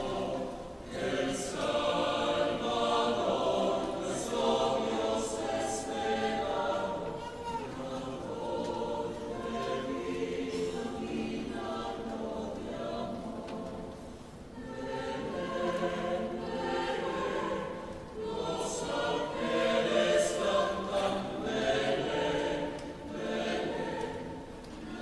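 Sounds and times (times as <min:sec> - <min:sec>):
choir singing a cappella: 0:00.0 - 0:25.0.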